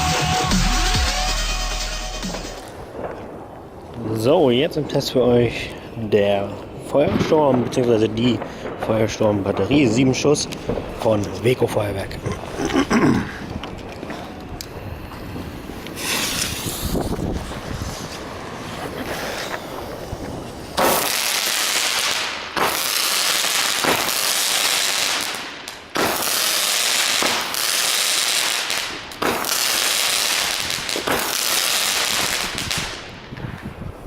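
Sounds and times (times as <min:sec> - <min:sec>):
firework crackling: 0:00.0 - 0:33.9
firework launches: 0:13.5 - 0:33.8.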